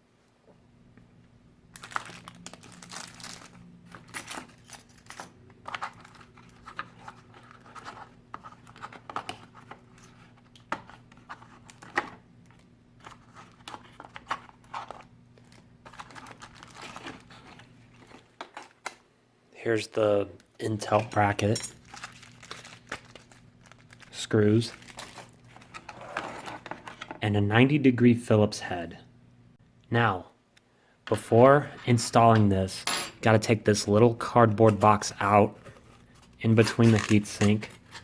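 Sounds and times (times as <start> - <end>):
plastic and cardboard rustling: 1.8 - 19.0, 20.7 - 27.2, 34.4 - 38.0.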